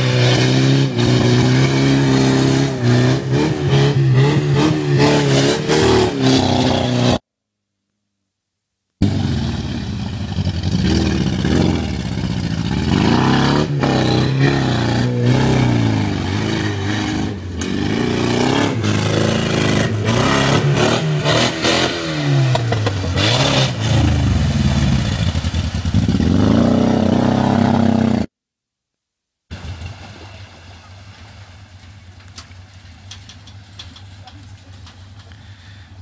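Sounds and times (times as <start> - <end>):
off-road vehicle engine revving: 0.0 - 7.2, 9.0 - 28.3.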